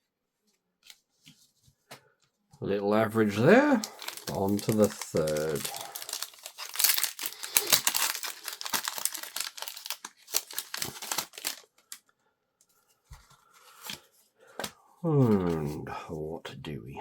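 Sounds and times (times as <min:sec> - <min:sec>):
foil wrapper crinkling and tearing: 0:03.3 - 0:12.0.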